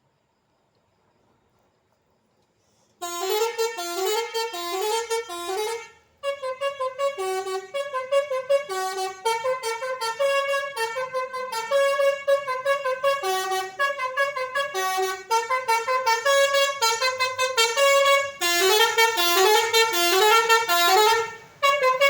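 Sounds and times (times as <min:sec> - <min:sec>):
bus musical horn playing tune: 0:03.0 - 0:22.0.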